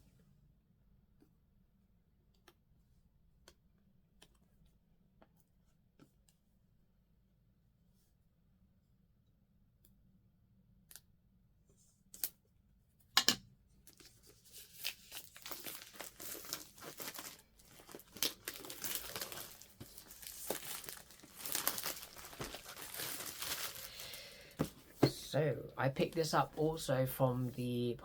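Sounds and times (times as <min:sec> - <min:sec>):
packaging tearing and crinkling: 0:13.9 - 0:24.5.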